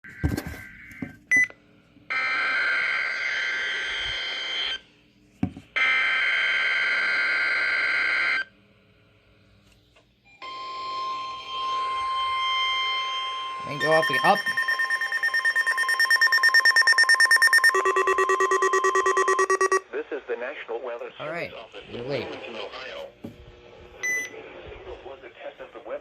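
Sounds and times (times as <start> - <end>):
weather alert alarm tone: 11.6 - 19.8
harsh digital data tones: 13.6 - 19.8
short beep: 13.6 - 19.8.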